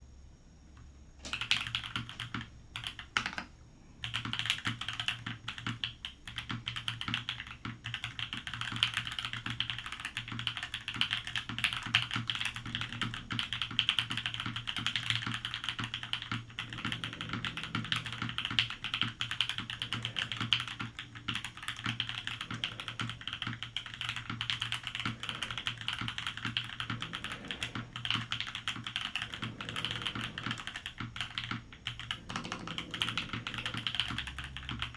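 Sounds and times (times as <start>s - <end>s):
mechanical keyboard typing: 1.2s - 34.9s.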